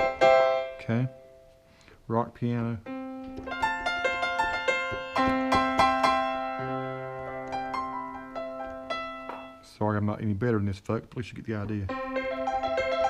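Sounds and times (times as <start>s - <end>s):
synthesizer piano notes: 0.0s - 1.6s, 2.8s - 9.7s, 11.9s - 13.0s.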